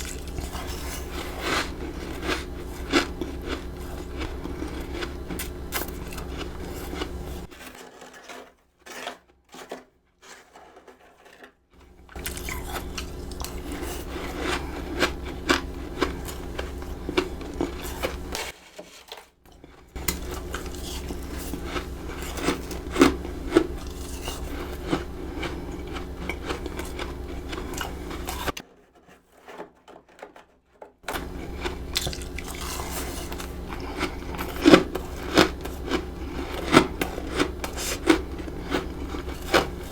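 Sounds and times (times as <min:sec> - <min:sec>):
crunching frost: 0:00.0 - 0:07.5, 0:11.8 - 0:18.5, 0:19.6 - 0:28.6, 0:31.1 - 0:39.9
low hum: 0:00.0 - 0:07.5, 0:11.9 - 0:18.5, 0:19.9 - 0:28.6.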